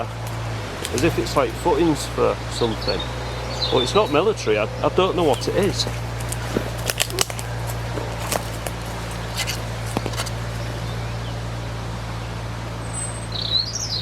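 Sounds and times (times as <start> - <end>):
footsteps on woodland ground: 0.0 - 11.4
steady low hum: 0.0 - 13.4
bird call: 2.6 - 11.4.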